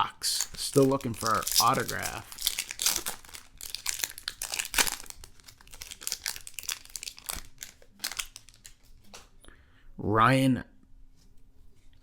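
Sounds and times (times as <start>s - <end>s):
wrappers tearing and crinkling: 0.3s - 9.3s.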